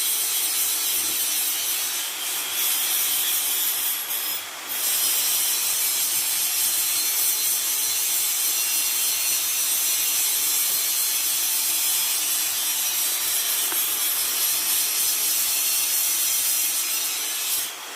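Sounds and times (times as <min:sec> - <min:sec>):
electric hand grinder running: 0:00.9 - 0:17.8.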